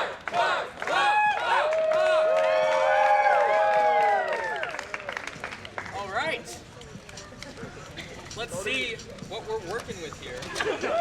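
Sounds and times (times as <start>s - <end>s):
crowd cheering: 0.0s - 5.9s
voices whooping and yelling: 0.9s - 4.8s.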